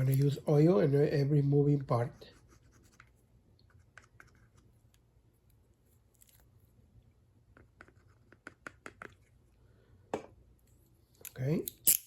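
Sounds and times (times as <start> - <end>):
handcuffs clicking: 11.2 - 12.0.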